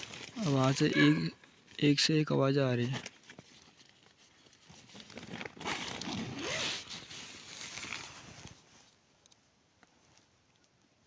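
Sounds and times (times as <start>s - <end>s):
tent zipper rasping: 5.0s - 8.5s.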